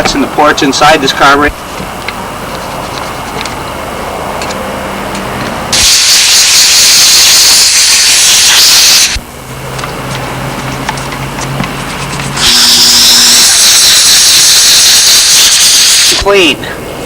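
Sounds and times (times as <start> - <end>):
steam cleaner hissing: 5.7 - 9.2, 12.4 - 16.6.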